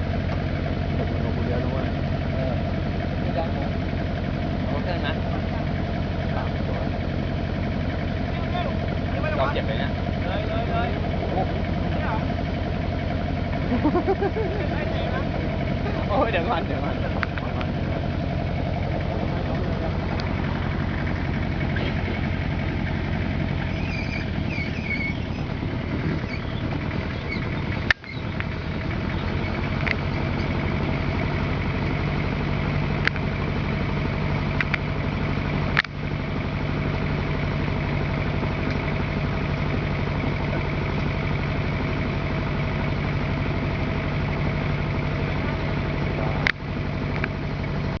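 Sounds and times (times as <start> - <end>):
engine idling: 0.0 - 48.0
sharp clicks: 27.4 - 28.6, 34.6 - 34.9, 35.7 - 36.0.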